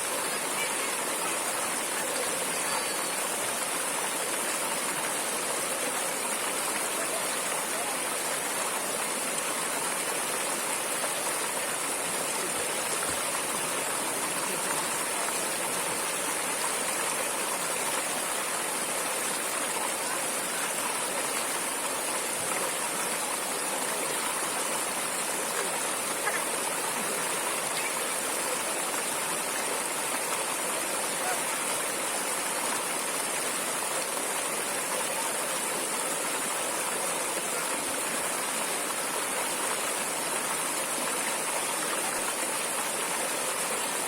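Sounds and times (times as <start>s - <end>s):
stream water rushing: 0.0s - 44.0s.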